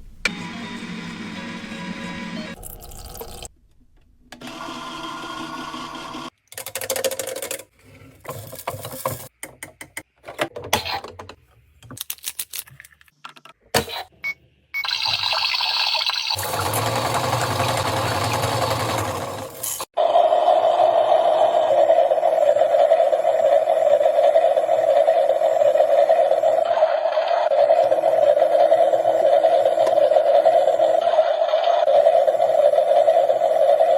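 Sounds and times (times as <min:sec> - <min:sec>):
washing machine humming: 0:14.8 - 0:33.9
washing machine whirring: 0:14.8 - 0:33.9.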